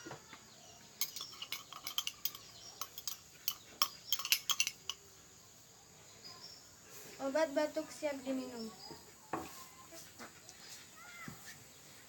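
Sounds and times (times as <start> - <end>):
spoon clinking in glass: 1.0 - 5.0.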